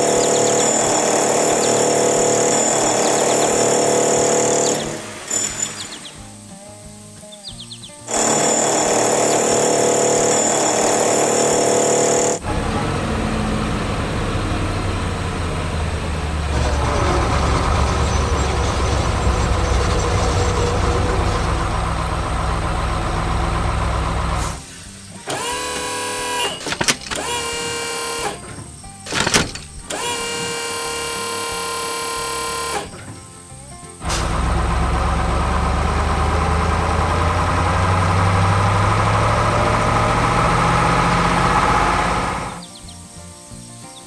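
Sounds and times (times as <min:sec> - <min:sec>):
diesel engine running: 0:00.0 - 0:06.2, 0:08.1 - 0:33.1, 0:33.9 - 0:42.7
loud hiss of air: 0:00.6 - 0:07.2, 0:24.3 - 0:26.6.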